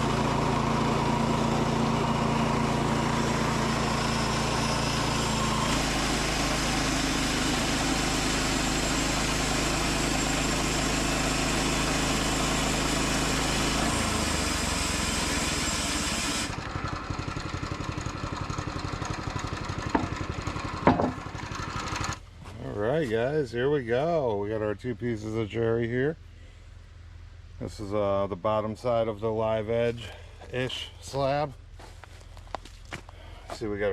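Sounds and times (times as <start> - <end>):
sawmill gas engine running: 0.0 - 23.3
sharp knocks: 19.9 - 20.2, 20.8 - 21.3.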